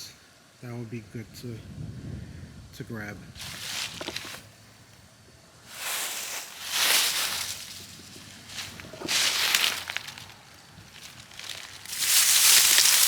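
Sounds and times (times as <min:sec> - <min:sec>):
dry grass rustling and crackling: 0:03.4 - 0:04.9, 0:05.7 - 0:13.0.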